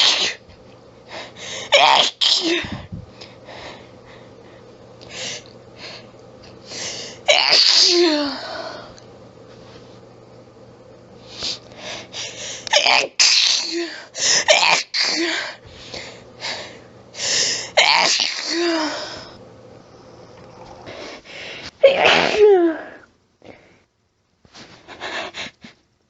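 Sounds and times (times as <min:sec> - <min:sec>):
person sneezing: 0:07.3 - 0:08.5, 0:12.6 - 0:15.5, 0:17.7 - 0:19.0, 0:21.8 - 0:23.0.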